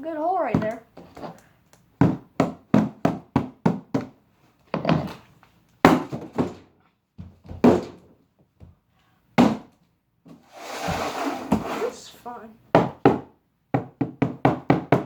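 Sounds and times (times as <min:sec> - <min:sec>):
hammer striking cardboard box: 0:02.0 - 0:04.2, 0:05.8 - 0:06.7, 0:07.5 - 0:08.0, 0:09.4 - 0:09.7, 0:12.8 - 0:15.0.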